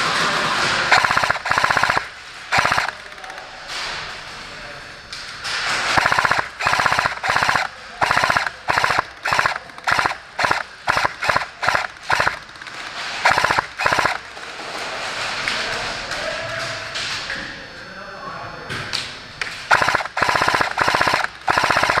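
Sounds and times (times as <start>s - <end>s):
airsoft gun automatic bursts: 0.0s - 3.4s, 5.6s - 14.4s, 19.7s - 22.0s.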